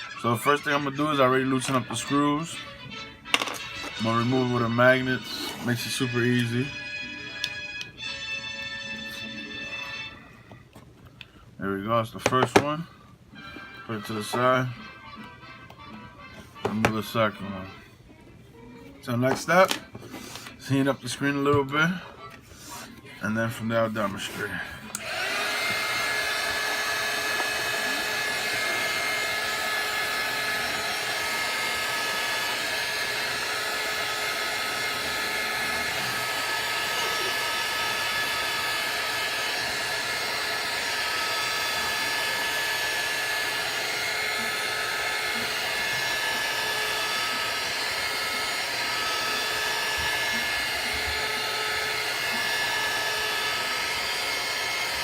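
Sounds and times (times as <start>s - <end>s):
heat gun blowing with motor whine: 24.8s - 55.0s.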